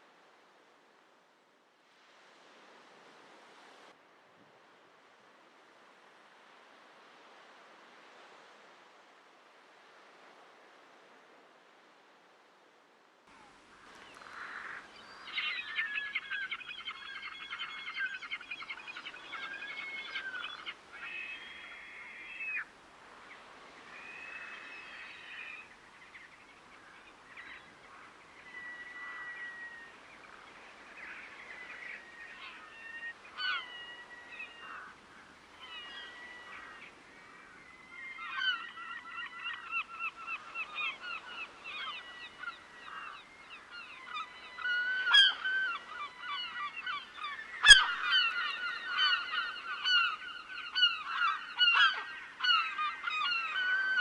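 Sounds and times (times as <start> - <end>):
water birds calling: 13.3 - 54.0.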